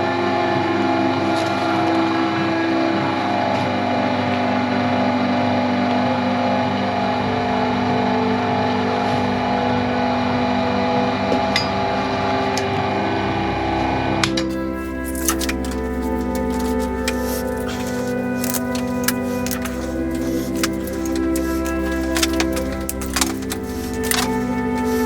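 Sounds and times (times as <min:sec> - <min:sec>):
wire stripping machine humming: 0:14.5 - 0:25.0.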